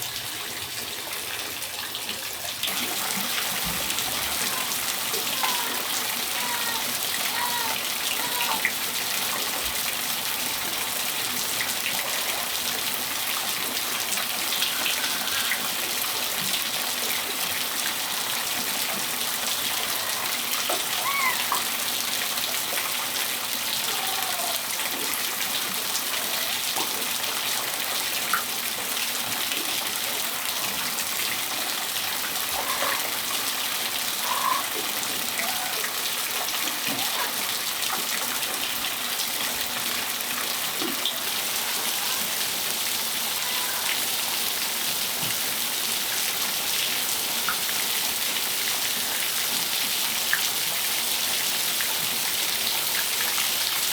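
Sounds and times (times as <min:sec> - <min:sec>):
rain falling on a patio: 0:00.0 - 0:53.9
faint bird calls: 0:34.2 - 0:34.7.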